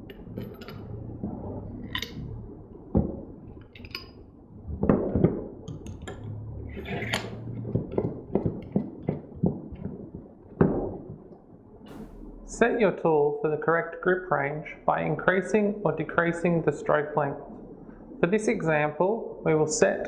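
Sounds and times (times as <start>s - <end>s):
metal tool parts clinking: 0.0s - 0.8s, 1.9s - 2.2s, 3.8s - 4.2s.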